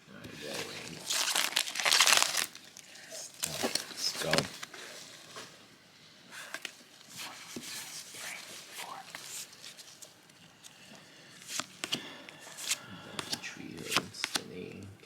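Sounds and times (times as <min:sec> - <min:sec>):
trading cards rustling: 0:00.5 - 0:02.7, 0:11.4 - 0:14.8.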